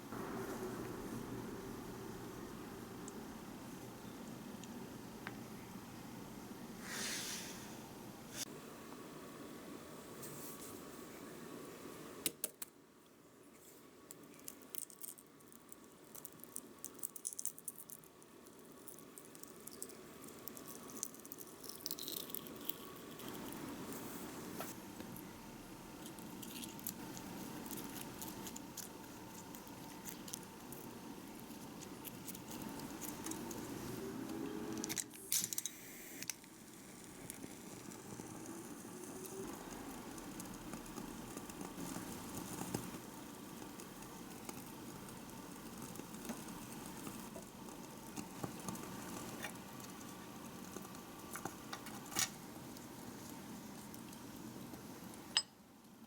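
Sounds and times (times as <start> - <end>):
faint steady hiss: 0.0 - 56.0
small utensils clicking and scraping: 14.1 - 24.0, 26.0 - 33.8, 39.2 - 54.3.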